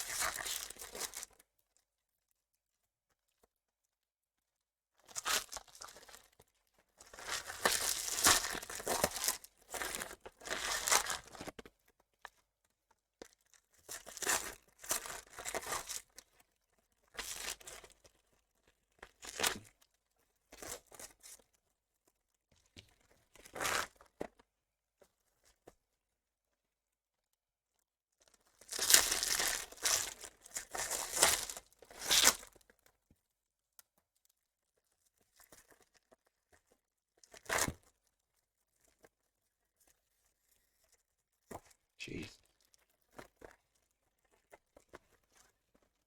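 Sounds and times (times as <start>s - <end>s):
card wrappers tearing and crinkling: 28.7s - 32.5s.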